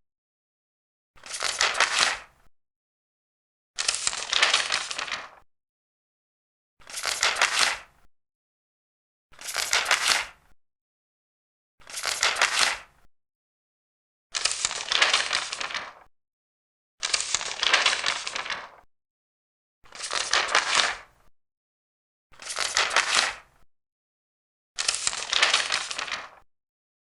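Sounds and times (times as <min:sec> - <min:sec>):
paper pages turning: 0:01.2 - 0:02.3, 0:03.8 - 0:05.4, 0:06.8 - 0:07.9, 0:09.4 - 0:10.4, 0:11.8 - 0:12.9, 0:14.4 - 0:16.1, 0:17.0 - 0:18.8, 0:19.9 - 0:21.1, 0:22.4 - 0:23.4, 0:24.8 - 0:26.4.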